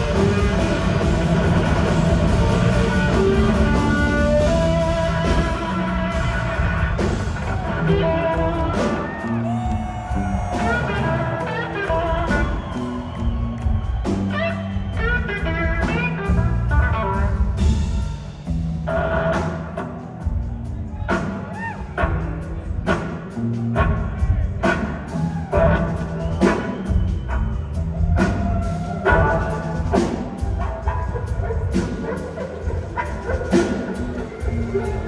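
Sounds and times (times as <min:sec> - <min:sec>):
electric guitar lead bending notes: 0:00.0 - 0:13.7
live blues-rock band playing: 0:00.0 - 0:35.0.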